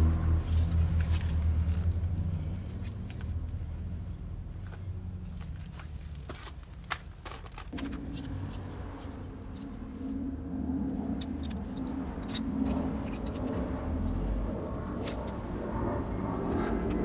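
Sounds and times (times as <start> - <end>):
motorcycle engine running: 7.7 - 17.0.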